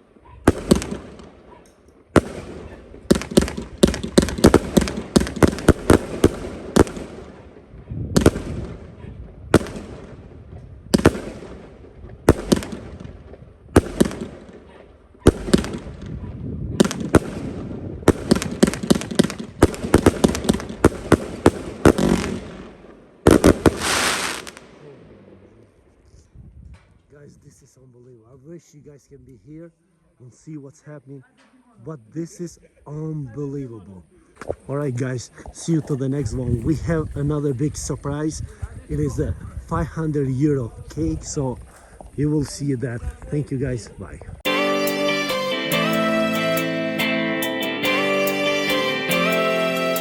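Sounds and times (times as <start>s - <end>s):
fireworks crackle: 0.0s - 25.0s
firework bangs: 0.0s - 25.1s
firework shots launching: 0.4s - 25.0s.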